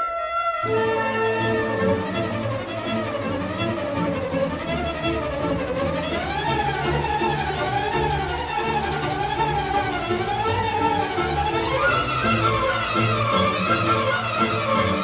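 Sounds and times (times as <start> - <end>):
instrumental music with vibrato melody: 0.1 - 15.0.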